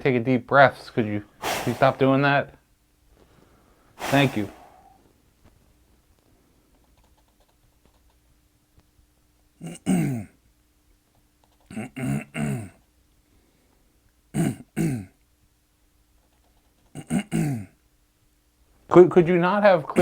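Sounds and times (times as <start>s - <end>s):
faint room hum: 0.0s - 20.0s
man clearing his throat: 4.0s - 4.9s, 9.6s - 10.4s, 11.7s - 12.8s, 14.3s - 15.2s, 17.0s - 17.8s.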